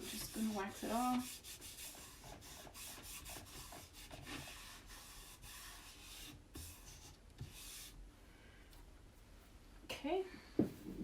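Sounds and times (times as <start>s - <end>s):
rag scrubbing wooden board: 0.0s - 8.0s.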